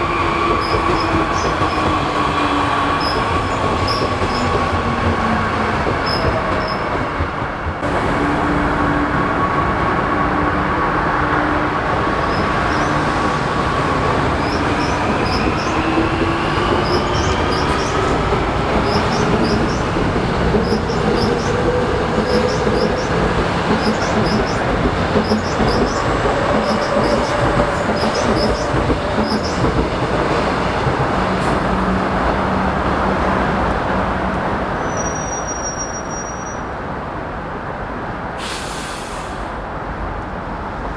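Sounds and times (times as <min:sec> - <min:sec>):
wheel and rail noise: 0:00.0 - 0:38.3
high wheel squeals: 0:11.9 - 0:19.9, 0:34.7 - 0:36.7.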